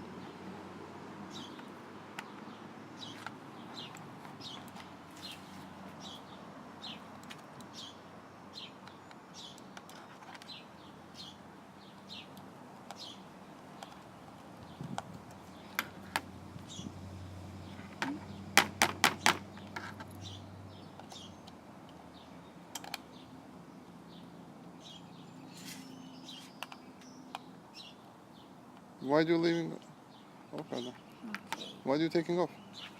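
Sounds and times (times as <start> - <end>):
bird chirping: 0.0 - 32.9
sharp clicks and knocks: 17.7 - 20.2.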